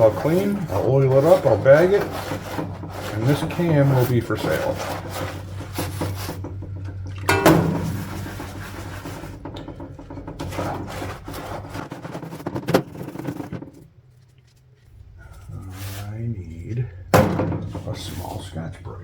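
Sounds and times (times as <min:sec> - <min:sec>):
low hum: 0:00.0 - 0:19.0
scrubbing metal: 0:00.0 - 0:19.0
loud knock: 0:07.3 - 0:11.5, 0:17.1 - 0:17.9.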